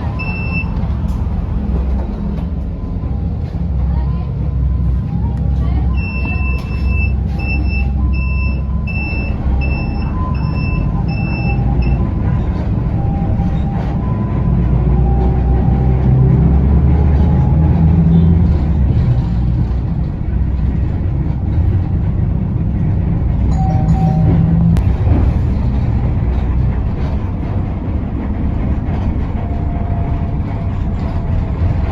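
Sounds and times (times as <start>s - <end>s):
bus engine and road rumble: 0.0s - 31.9s
high electronic beep: 5.9s - 12.1s.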